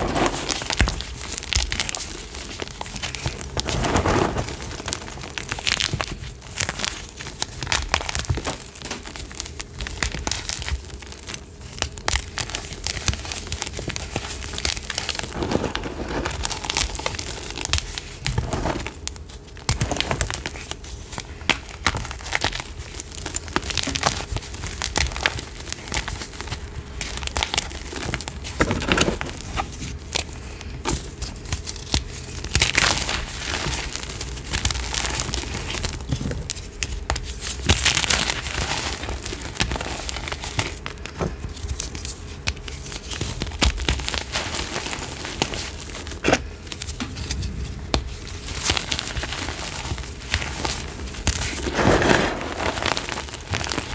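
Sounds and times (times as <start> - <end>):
chalk crunching: 0.0 - 0.7, 15.2 - 16.7, 48.9 - 53.9.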